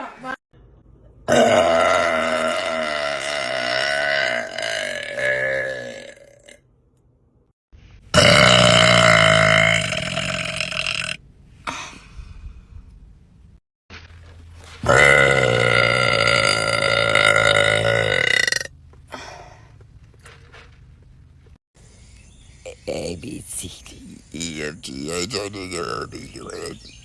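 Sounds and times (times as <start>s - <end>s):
person belching: 1.3s - 6.6s, 8.2s - 11.2s, 14.8s - 18.7s.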